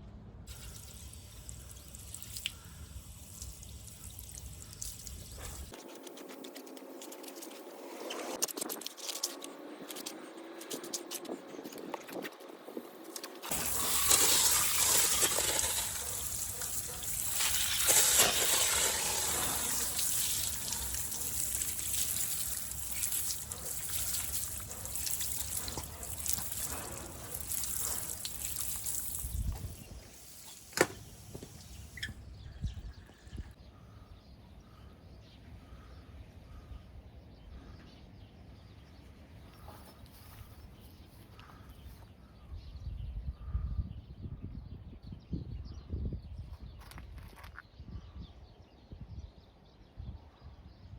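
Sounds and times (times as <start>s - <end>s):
water drips: 0.5s - 5.7s, 13.5s - 32.1s
water running and splashing: 0.5s - 5.8s, 13.4s - 32.0s.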